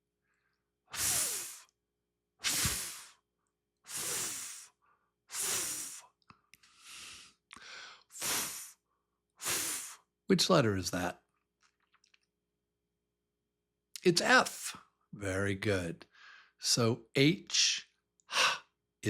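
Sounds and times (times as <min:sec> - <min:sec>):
man making breathy f sound: 0:01.0 - 0:01.7, 0:05.3 - 0:06.1.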